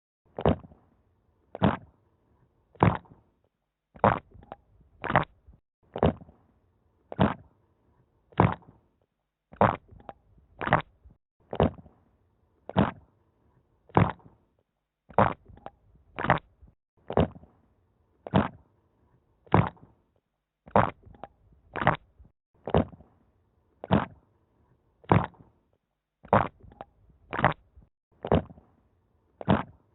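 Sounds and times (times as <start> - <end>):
wet squelches: 4.0 - 6.3, 7.1 - 7.5, 8.3 - 8.8, 9.5 - 11.8, 12.7 - 13.0, 13.9 - 14.3, 15.1 - 17.4, 20.7 - 23.0, 23.8 - 24.2, 25.0 - 25.5, 26.2 - 28.6, 29.4 - 29.8.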